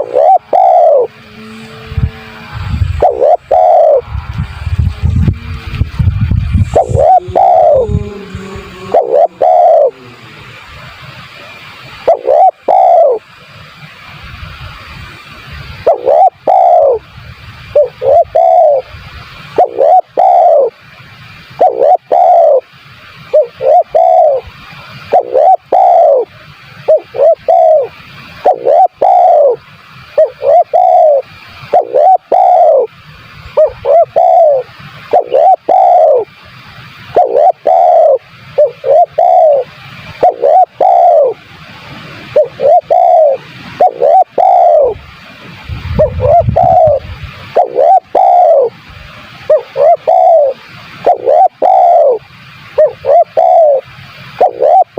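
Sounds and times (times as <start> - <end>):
dove cooing: 0.0 - 5.8, 6.6 - 10.6, 12.0 - 13.2, 15.8 - 17.1, 17.7 - 18.9, 19.6 - 20.8, 21.6 - 22.7, 23.3 - 24.4, 25.0 - 32.9, 33.6 - 36.4, 37.1 - 41.4, 42.3 - 45.0, 45.9 - 48.8, 49.5 - 54.9.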